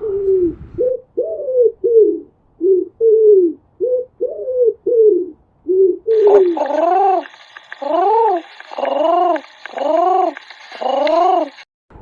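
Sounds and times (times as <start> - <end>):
pigeon cooing: 0.0 - 11.6
higher arched bird calls: 6.1 - 11.6.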